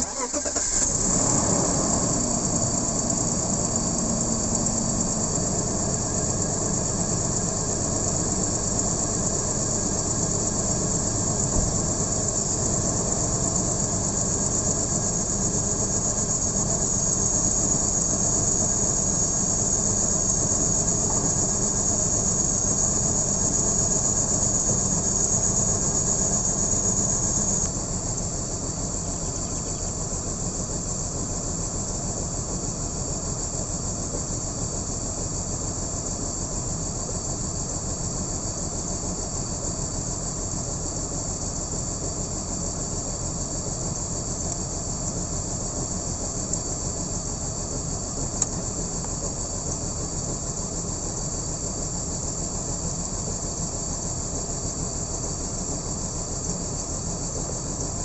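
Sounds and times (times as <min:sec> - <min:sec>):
car engine idling roughly: 0:00.0 - 0:58.0
faint ticks: 0:44.4 - 0:45.2, 0:48.3 - 0:49.9.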